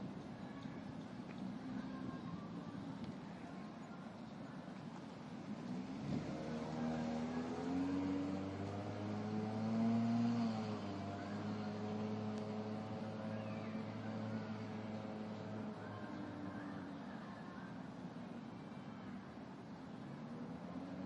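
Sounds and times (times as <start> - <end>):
background traffic noise: 0.0 - 21.0
vehicle engine passing by: 5.5 - 16.9, 20.1 - 21.0.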